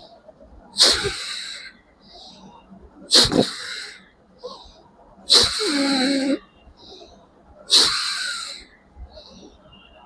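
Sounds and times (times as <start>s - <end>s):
forceful breaths through nose: 0.8s - 9.6s.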